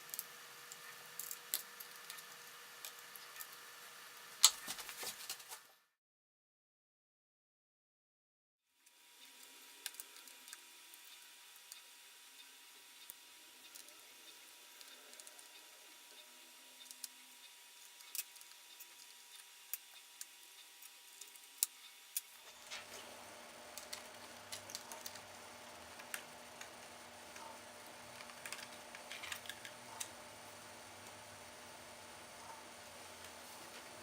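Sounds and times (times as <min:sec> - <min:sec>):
small parts and tools clicking: 0:00.0 - 0:03.7, 0:08.8 - 0:22.9, 0:23.8 - 0:26.7, 0:27.3 - 0:30.2
background hiss and hum: 0:08.8 - 0:34.0.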